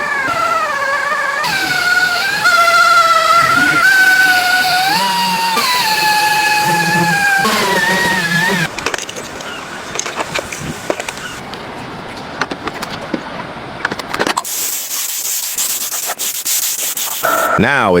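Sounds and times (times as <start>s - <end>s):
bodywork being sanded: 0.0s - 8.7s, 14.5s - 17.5s.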